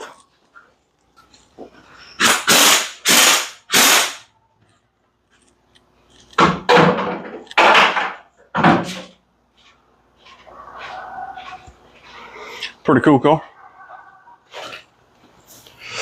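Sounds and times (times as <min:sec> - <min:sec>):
impact wrench hammering: 0:02.2 - 0:04.2.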